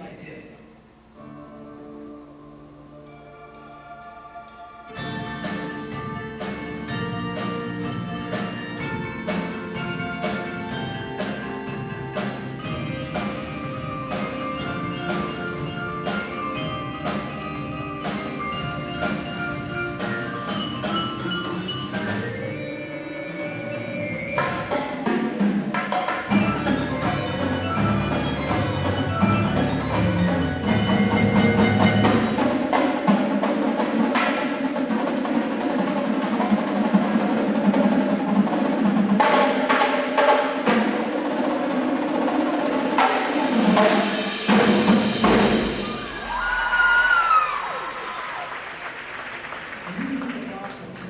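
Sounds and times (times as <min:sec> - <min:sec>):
drums: 0:00.0 - 0:51.0
marimbas and mallet keyboards: 0:01.3 - 0:25.6, 0:26.3 - 0:33.1.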